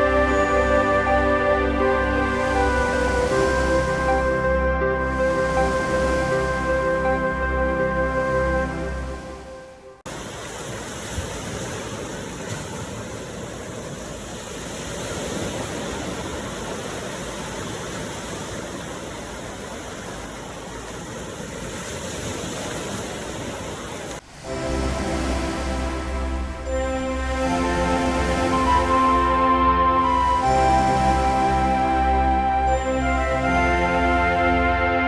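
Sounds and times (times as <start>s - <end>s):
background music: 0.0s - 10.0s, 24.4s - 35.0s
ocean surf rushing: 0.0s - 35.0s.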